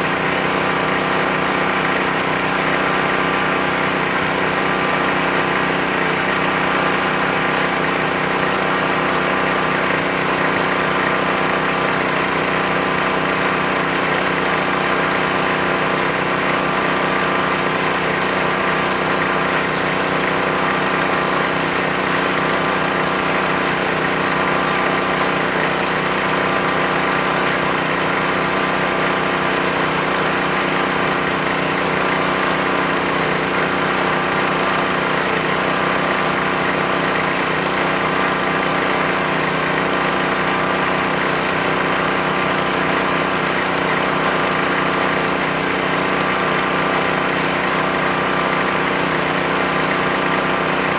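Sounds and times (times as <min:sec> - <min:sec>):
small engine running: 0:00.0 - 0:50.9.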